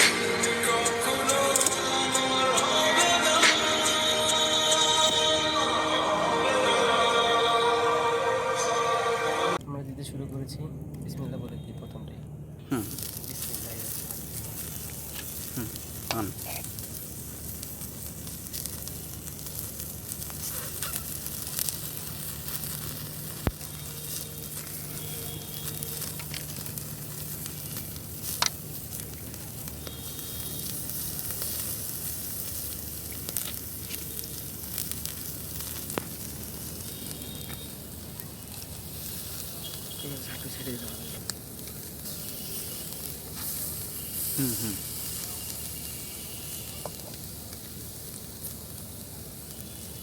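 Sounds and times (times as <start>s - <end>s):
meat sizzling on a grill: 12.7s - 50.0s
wood fire popping: 12.7s - 50.0s.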